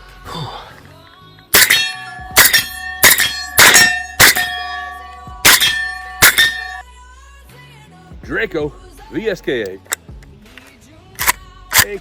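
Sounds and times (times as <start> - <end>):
steel target ringing: 1.6 - 6.8.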